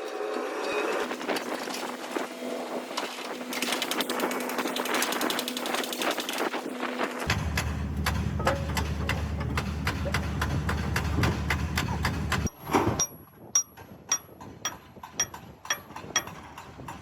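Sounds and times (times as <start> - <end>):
steady low hum: 7.3 - 12.5
ringing hammer strikes: 7.6 - 11.6, 12.4 - 16.9
hammer knocking on steel: 8.1 - 17.0.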